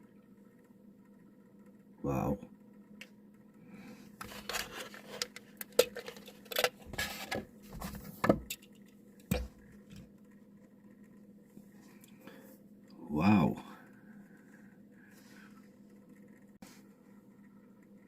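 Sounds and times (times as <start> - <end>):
cardboard and plastic packaging rustling: 4.2 - 8.5
sharp clicks and knocks: 4.2 - 11.2.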